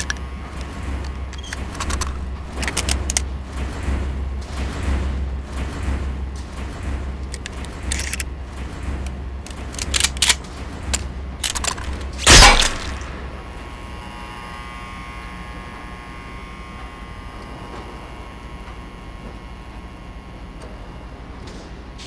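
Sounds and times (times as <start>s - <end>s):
loud bang: 11.4s - 13.5s
short sharp noises: 11.5s - 13.3s.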